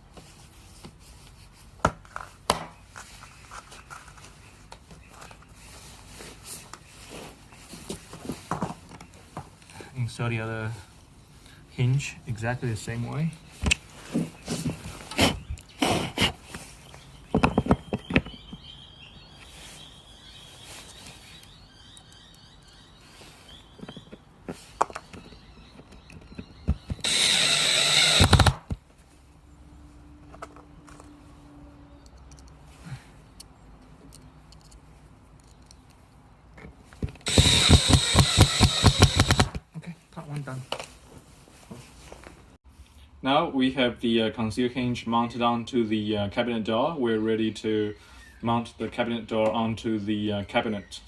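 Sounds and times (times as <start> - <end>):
power drill driving screw: 26.7 - 28.8, 37.2 - 39.6.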